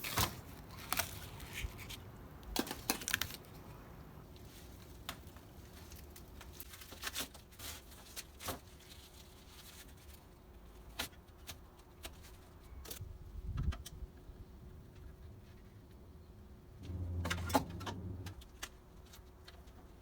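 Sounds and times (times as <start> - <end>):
steady low hum: 14.4 - 19.1
dull low thump: 16.8 - 18.4.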